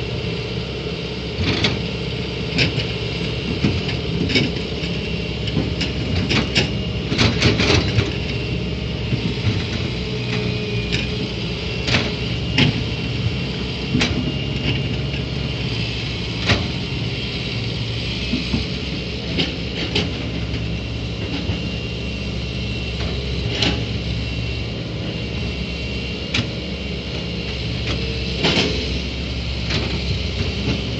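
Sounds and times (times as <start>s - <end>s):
excavator engine drone: 0.0s - 30.9s.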